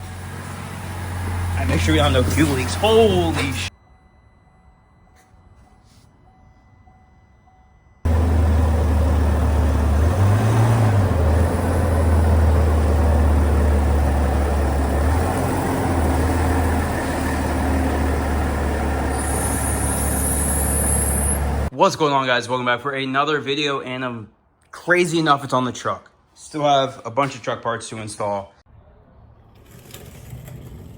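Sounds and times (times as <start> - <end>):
diesel engine idling: 0.0 - 3.7, 8.1 - 21.7.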